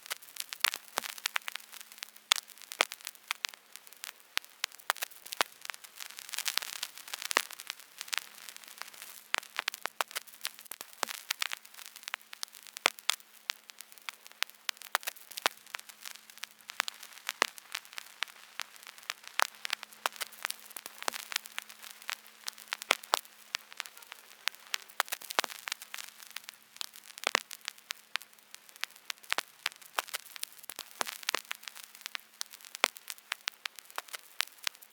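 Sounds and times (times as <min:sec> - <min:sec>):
vinyl crackles and pops: 0:00.0 - 0:34.9
vinyl record hiss: 0:00.0 - 0:34.9.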